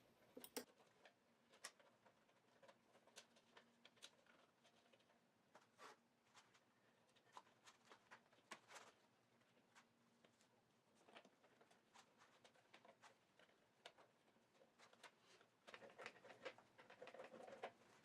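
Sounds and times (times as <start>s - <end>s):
small clicks and taps: 0.3s - 5.1s.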